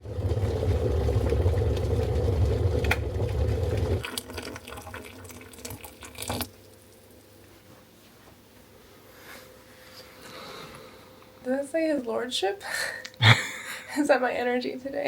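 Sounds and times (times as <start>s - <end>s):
engine-like low rumble: 0.0s - 4.0s.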